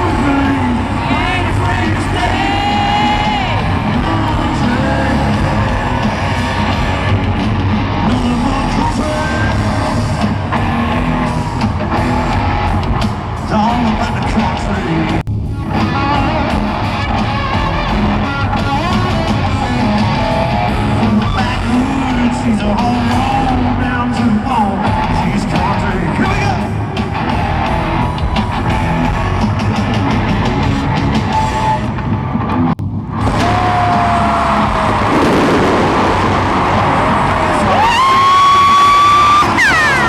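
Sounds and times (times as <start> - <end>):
man singing: 0.0 - 7.1, 8.0 - 10.4
audience yelling along: 0.0 - 12.8, 33.2 - 40.0
electric guitars: 0.0 - 40.0
live country-rock band: 0.0 - 40.0.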